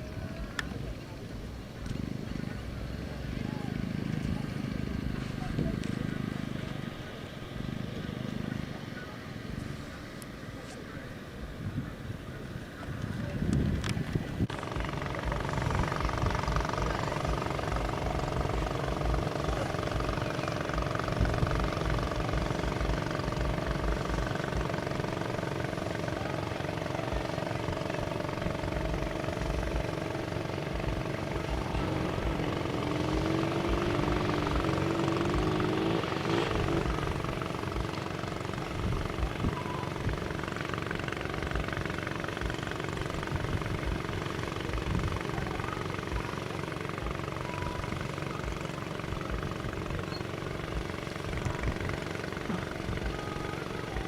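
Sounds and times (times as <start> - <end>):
vehicle engine running: 0.0 - 54.0
wind buffeting microphone: 11.3 - 24.3.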